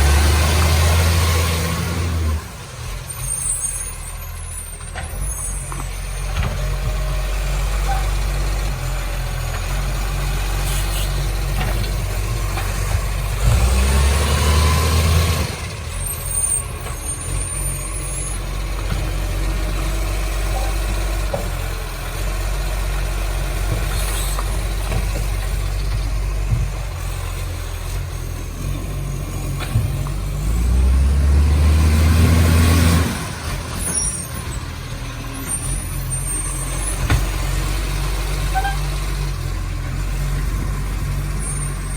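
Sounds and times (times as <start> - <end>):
garbage truck diesel engine revving: 0.0 - 41.9.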